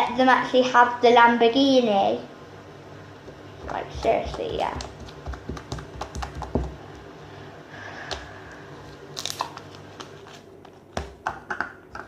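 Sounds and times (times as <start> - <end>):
slime being squished: 9.1 - 10.2.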